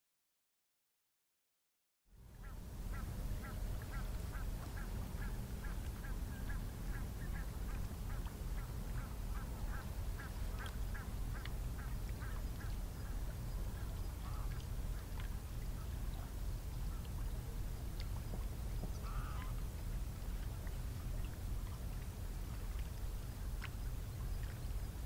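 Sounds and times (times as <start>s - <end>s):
steady low rumble: 2.2s - 25.0s
waterfowl honking calls: 2.4s - 17.1s, 18.8s - 19.7s.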